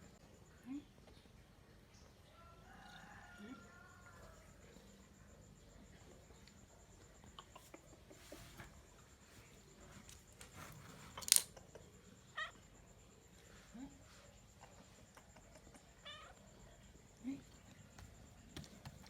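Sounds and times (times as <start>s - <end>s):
cat meowing: 12.3s - 12.6s, 16.0s - 16.4s.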